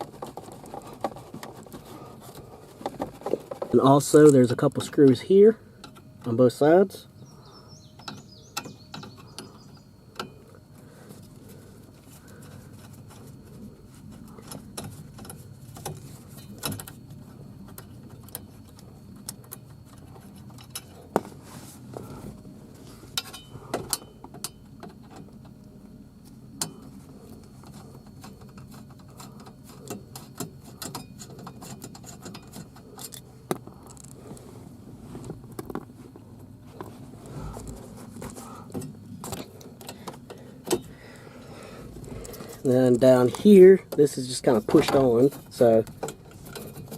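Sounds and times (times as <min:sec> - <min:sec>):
faint low hum: 0:00.0 - 0:46.9
hand tools and plastic trim clicks: 0:27.6 - 0:34.2, 0:43.3 - 0:46.9.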